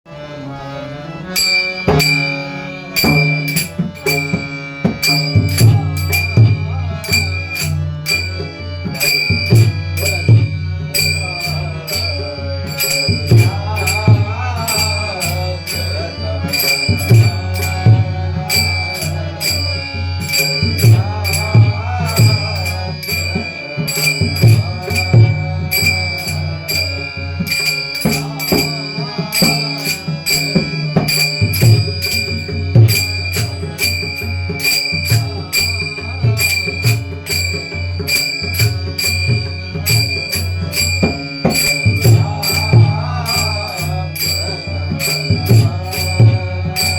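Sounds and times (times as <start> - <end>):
hand cymbals struck: 1.4 - 46.9
person singing: 1.9 - 39.2, 39.8 - 46.9.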